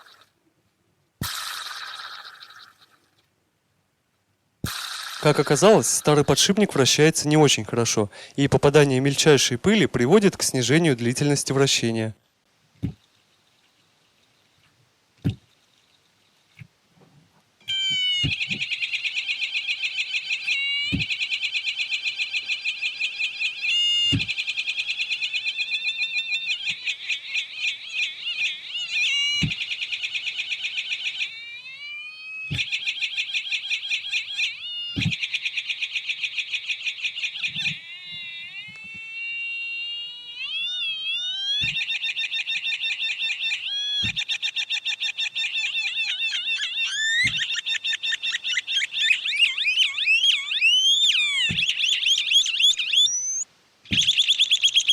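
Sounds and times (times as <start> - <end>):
sharp clicks: 4.6 - 6.2
electronic chirping trill: 4.7 - 6.4, 37.4 - 42.0, 43.0 - 54.9.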